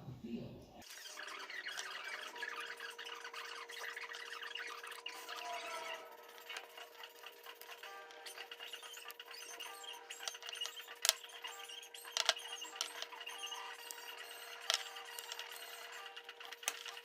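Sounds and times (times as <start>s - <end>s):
metal parts clinking: 7.4s - 17.0s.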